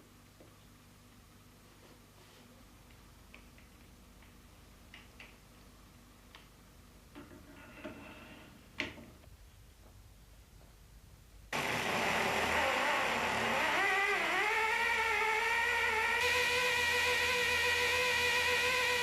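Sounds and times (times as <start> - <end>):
grinder motor whining: 11.6 - 19.0.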